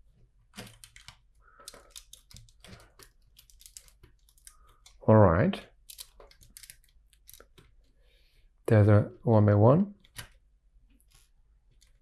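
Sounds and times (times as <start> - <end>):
plastic pieces clicking: 0.5 - 5.0, 5.7 - 7.9.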